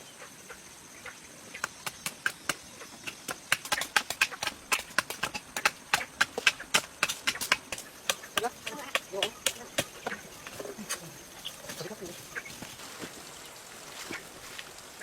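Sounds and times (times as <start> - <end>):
tool striking wood: 1.6 - 10.2.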